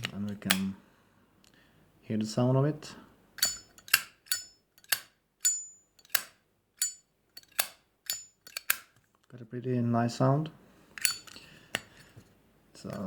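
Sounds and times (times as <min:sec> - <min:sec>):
high metallic ringing clink: 0:03.4 - 0:06.2, 0:06.8 - 0:08.7, 0:11.0 - 0:11.5.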